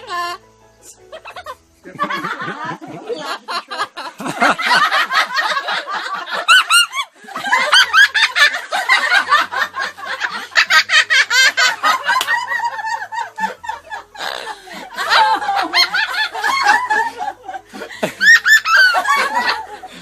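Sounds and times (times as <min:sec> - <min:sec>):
parrot imitating laughter: 0:14.2 - 0:14.6.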